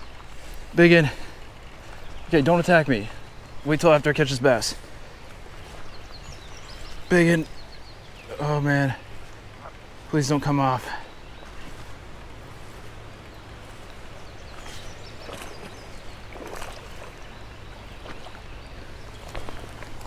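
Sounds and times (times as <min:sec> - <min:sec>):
creek water running: 0:00.0 - 0:20.0
fish splashing: 0:13.5 - 0:20.0.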